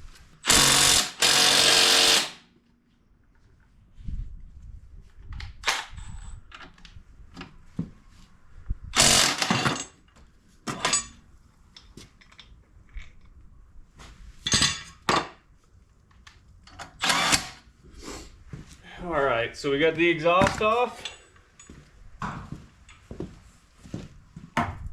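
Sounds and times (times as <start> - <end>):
power tool bursts: 0.4 - 2.4, 9.0 - 9.8, 17.0 - 17.6.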